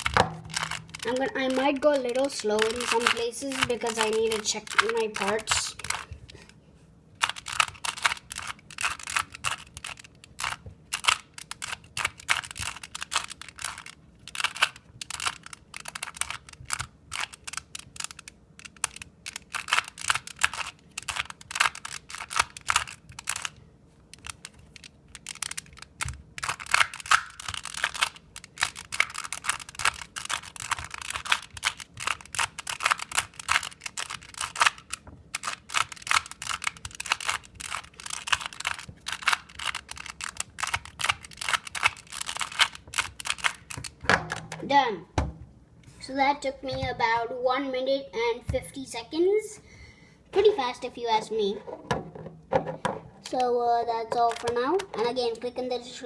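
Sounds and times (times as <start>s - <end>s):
puzzle cube clicking as turned: 0.0s - 6.5s, 7.2s - 44.6s, 54.2s - 55.1s.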